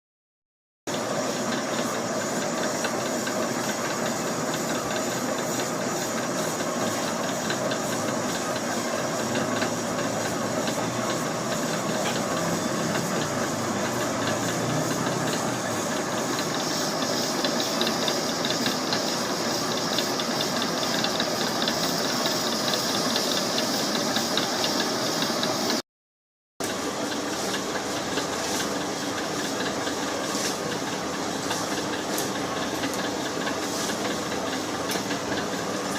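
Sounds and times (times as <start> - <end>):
machinery hissing: 0.9 - 25.8.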